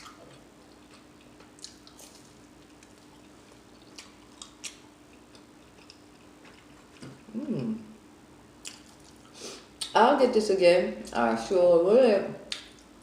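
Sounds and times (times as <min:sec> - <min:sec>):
mouth chewing crunchy food: 0:00.0 - 0:07.3, 0:08.6 - 0:09.9
faint steady hum: 0:00.0 - 0:13.0.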